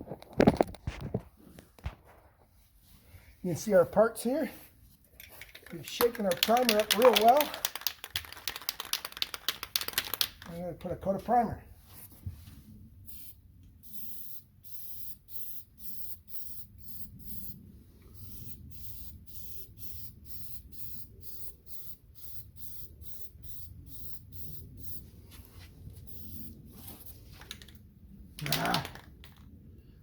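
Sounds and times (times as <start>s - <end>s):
spray can hissing in spurts: 5.6s - 10.4s, 13.1s - 17.6s, 18.2s - 25.0s, 26.0s - 27.6s.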